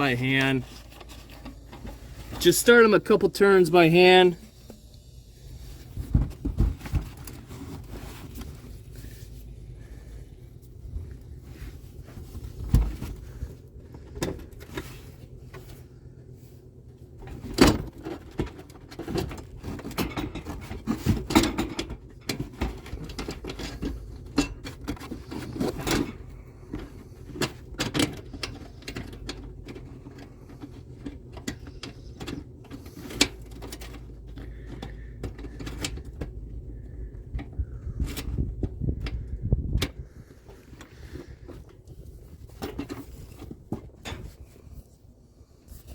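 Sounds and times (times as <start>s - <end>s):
screws and plastic cover rattling: 0.0s - 4.8s, 17.2s - 44.8s.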